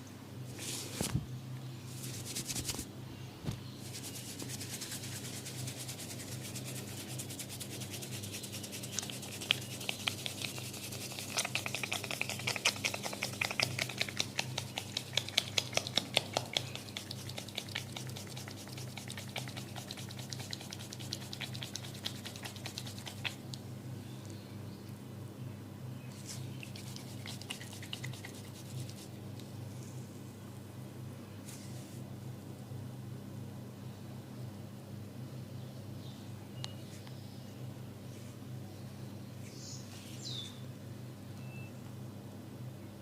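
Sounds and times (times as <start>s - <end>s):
steady low hum: 0.0s - 43.0s
hands tapping on skin: 11.2s - 23.4s.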